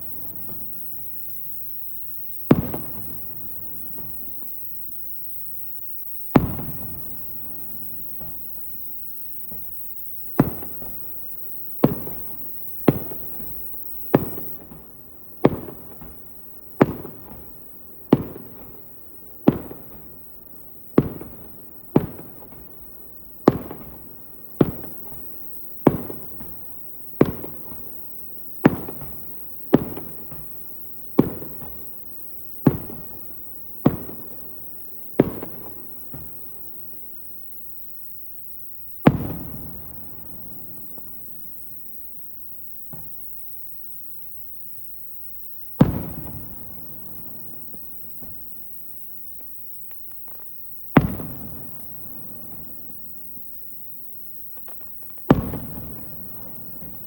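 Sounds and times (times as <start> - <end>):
firework shells bursting: 0.0 - 14.6.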